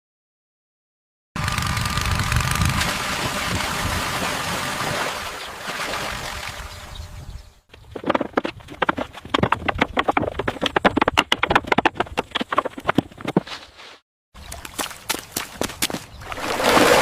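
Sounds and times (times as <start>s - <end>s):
rapid knocks and scrapes: 7.7s - 14.0s.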